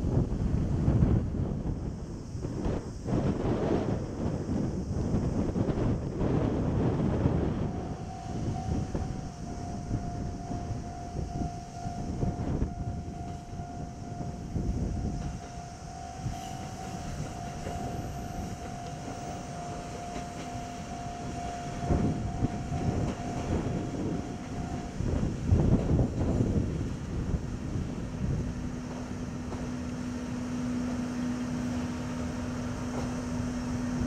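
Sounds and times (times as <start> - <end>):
wind on microphone: 0.0 - 34.0
level crossing warning bell: 6.8 - 34.0.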